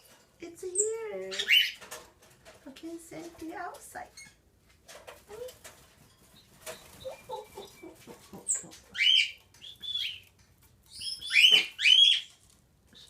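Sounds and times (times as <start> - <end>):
small bird chirping: 0.7 - 1.8, 6.1 - 13.0
light clicks and rustles: 1.7 - 11.0.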